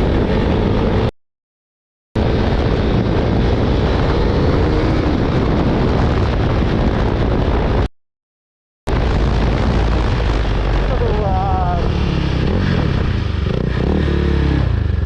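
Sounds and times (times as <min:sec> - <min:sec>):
wind buffeting microphone: 0:02.2 - 0:07.9, 0:08.9 - 0:15.0.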